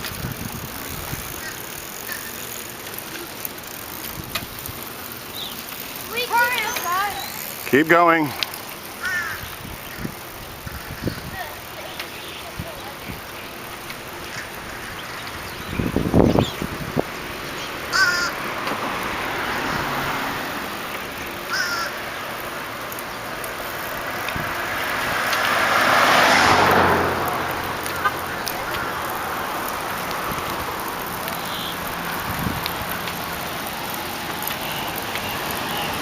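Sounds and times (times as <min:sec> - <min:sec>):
car passing: 0:00.0 - 0:36.0
road noise: 0:00.0 - 0:36.0
wind: 0:00.0 - 0:36.0
crow cawing: 0:09.0 - 0:09.6, 0:10.6 - 0:11.3, 0:14.2 - 0:15.2, 0:17.9 - 0:18.4, 0:21.4 - 0:22.1.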